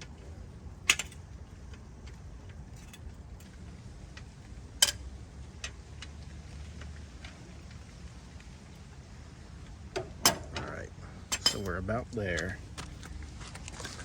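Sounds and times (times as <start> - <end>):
car jack cranking and clinking: 0.0 - 3.6, 4.8 - 5.8, 10.0 - 12.0
metal clank: 10.0 - 10.7, 11.3 - 11.8.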